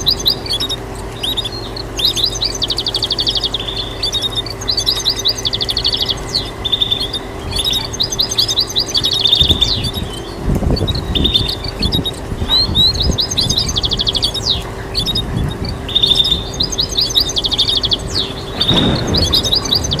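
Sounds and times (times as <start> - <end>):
goldfinch singing trills: 0.0 - 20.0
low rumble: 0.0 - 20.0.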